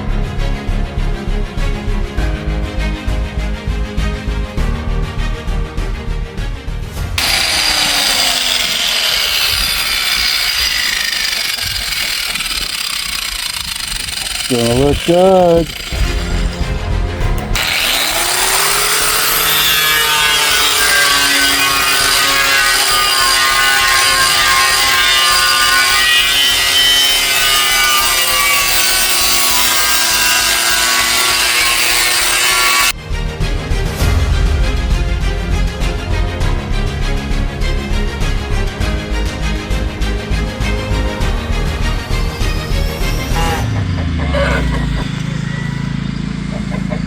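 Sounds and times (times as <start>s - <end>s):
power grinder grinding metal: 7.2s - 33.0s, 38.8s - 47.0s.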